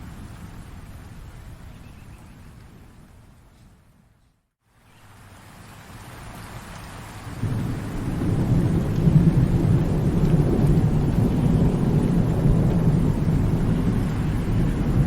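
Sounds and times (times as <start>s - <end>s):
rain hissing: 0.0s - 15.0s
thunder rumbling: 7.3s - 15.0s.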